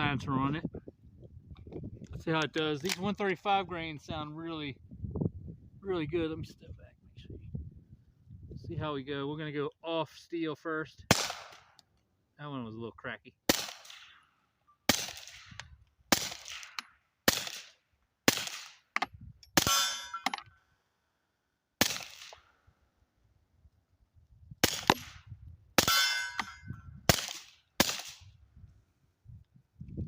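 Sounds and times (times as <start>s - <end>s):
suppressed pistol shots: 11.1s - 11.7s, 14.9s - 17.7s, 18.3s - 18.8s, 21.8s - 22.4s, 24.6s - 25.2s, 27.1s - 28.2s
steel target clanging: 19.6s - 20.4s, 25.8s - 26.8s.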